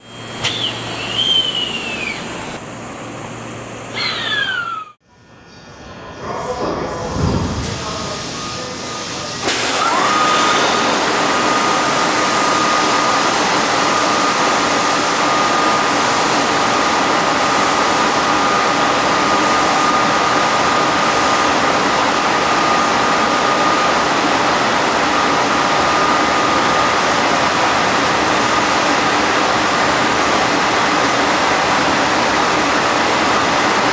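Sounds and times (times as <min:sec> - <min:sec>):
air compressor whining hiss: 0:00.0 - 0:04.8, 0:05.8 - 0:33.9
gliding whistle-like tones: 0:00.1 - 0:02.6.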